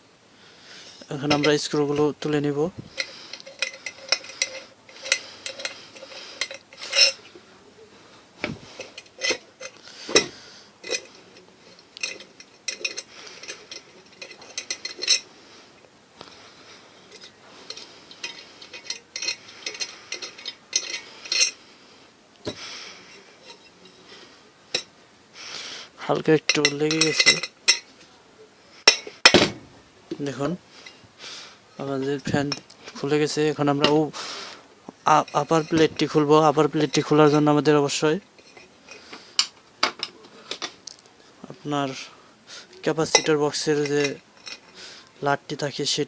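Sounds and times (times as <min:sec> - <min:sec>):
metallic clinks and scrapes: 0:01.2 - 0:07.4, 0:08.4 - 0:21.7, 0:22.4 - 0:24.9, 0:26.1 - 0:31.0, 0:31.8 - 0:34.2, 0:35.0 - 0:44.8.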